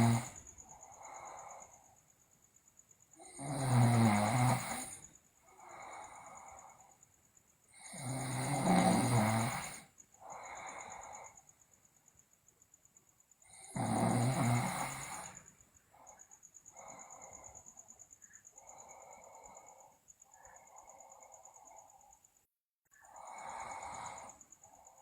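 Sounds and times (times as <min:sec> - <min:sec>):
person snoring: 0:00.0 - 0:01.7, 0:03.2 - 0:05.0, 0:07.8 - 0:11.3, 0:13.6 - 0:15.4, 0:23.1 - 0:25.0
raspy breaths: 0:00.0 - 0:02.1, 0:04.9 - 0:07.1, 0:10.1 - 0:11.6, 0:15.1 - 0:22.4, 0:23.0 - 0:25.0.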